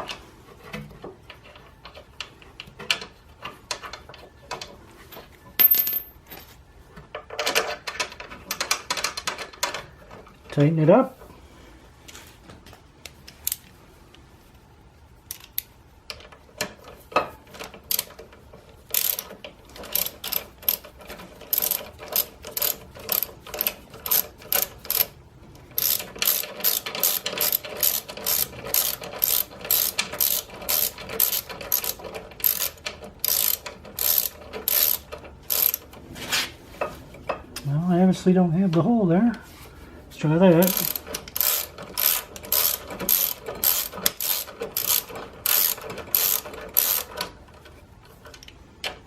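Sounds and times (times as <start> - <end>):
ratchet wrench clicks: 17.9 - 18.2, 18.9 - 25.1, 25.7 - 35.9, 40.6 - 47.3.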